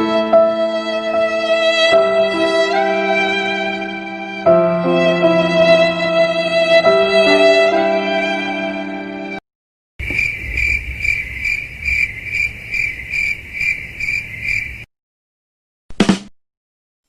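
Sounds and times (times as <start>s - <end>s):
sad violin phrase: 0.0s - 9.4s
cricket chirping: 10.0s - 14.9s.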